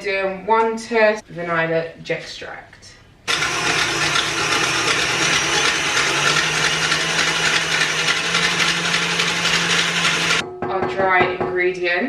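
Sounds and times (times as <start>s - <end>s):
stand mixer motor whirring: 3.3s - 10.4s.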